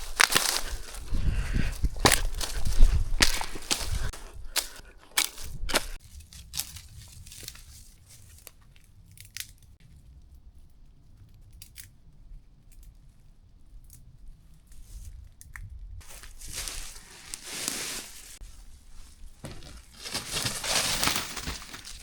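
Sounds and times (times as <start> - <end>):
gear rustling and crinkling: 0.0 - 9.2, 16.0 - 22.0.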